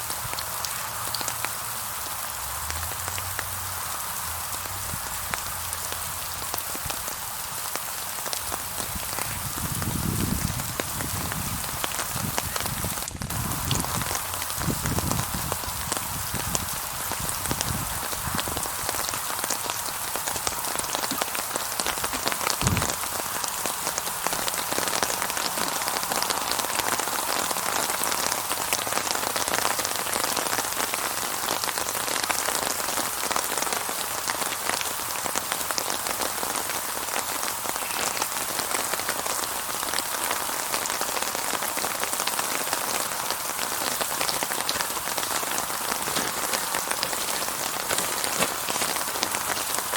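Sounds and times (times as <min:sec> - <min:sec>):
heavy rain on a surface: 0:00.0 - 0:49.9
dull low thump: 0:22.6 - 0:23.1.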